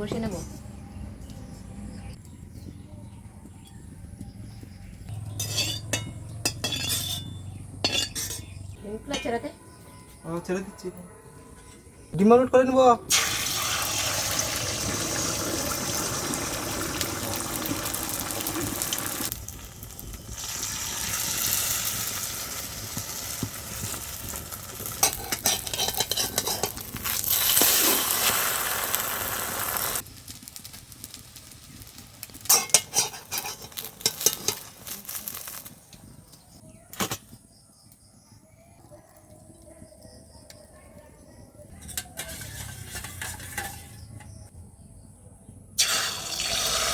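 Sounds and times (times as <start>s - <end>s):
spatula clinking and scraping pan: 5.1s - 9.5s, 23.4s - 28.1s, 32.4s - 35.6s, 41.7s - 44.5s
eggs sizzling in hot oil: 13.1s - 36.3s, 42.1s - 44.5s, 45.8s - 46.9s.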